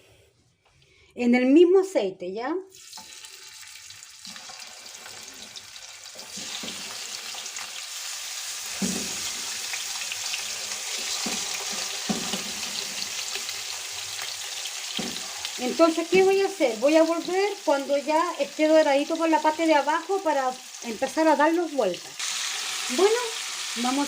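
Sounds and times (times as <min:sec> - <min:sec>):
food sizzling in hot oil: 0:02.7 - 0:24.0.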